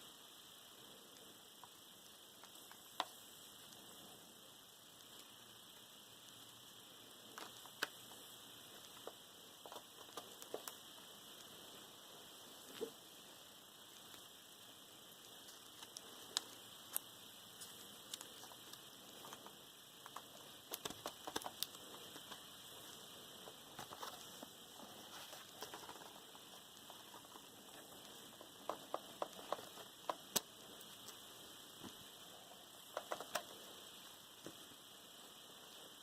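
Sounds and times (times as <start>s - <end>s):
faint hiss: 0.0s - 36.0s
small clicks and taps: 2.4s - 3.2s, 7.4s - 8.2s, 8.8s - 10.8s, 15.5s - 24.5s, 25.2s - 31.2s, 32.9s - 33.5s.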